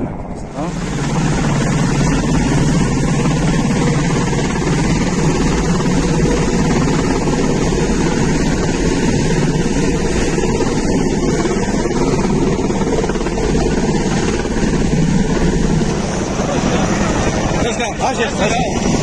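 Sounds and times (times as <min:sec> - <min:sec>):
helicopter engine and rotor: 0:00.0 - 0:19.0.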